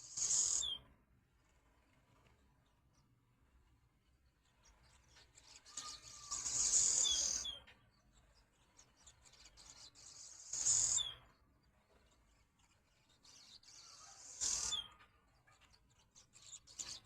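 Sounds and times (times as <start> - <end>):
swallows twittering: 0.0 - 0.9, 2.6 - 17.0.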